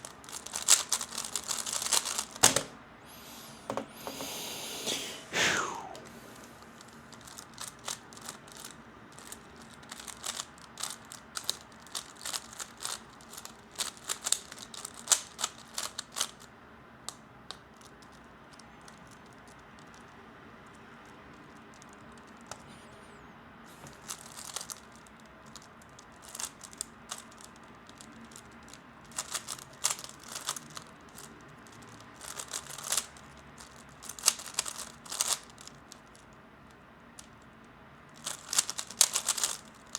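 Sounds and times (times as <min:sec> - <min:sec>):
puzzle cube plastic clicks: 0:00.0 - 0:02.8, 0:05.7 - 0:16.5, 0:23.9 - 0:37.5, 0:38.1 - 0:39.9.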